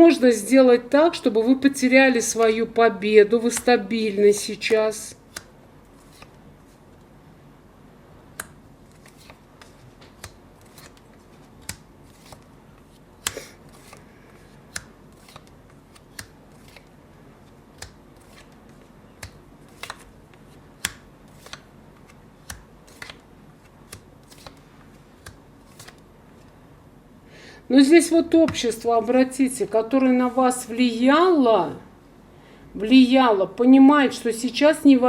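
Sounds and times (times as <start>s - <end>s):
faint room hum: 0.0s - 35.0s
cards clicking and snapping: 4.4s - 6.4s, 8.3s - 14.0s, 14.6s - 16.9s, 17.7s - 24.6s, 25.2s - 26.0s.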